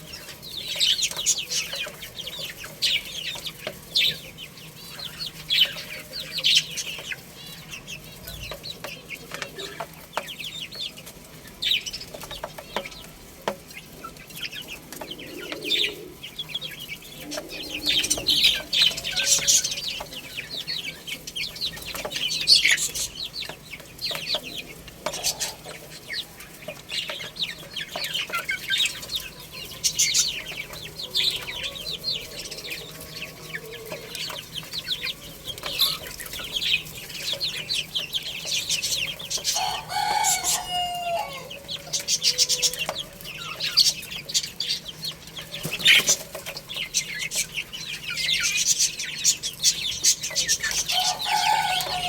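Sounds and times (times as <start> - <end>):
baby chicks peeping: 0.0 - 52.0
adult chicken call: 39.5 - 42.9, 50.7 - 52.0.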